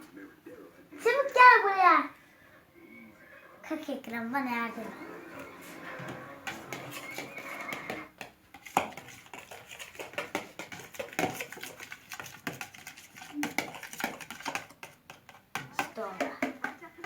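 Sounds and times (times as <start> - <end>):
toy dishes clattering: 4.7 - 17.0.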